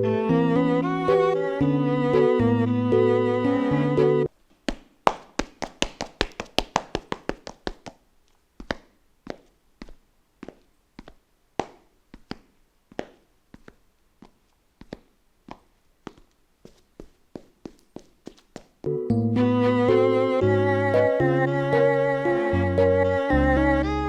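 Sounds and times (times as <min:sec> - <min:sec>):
sharp taps and knocks: 0:04.7 - 0:08.0, 0:10.4 - 0:13.8.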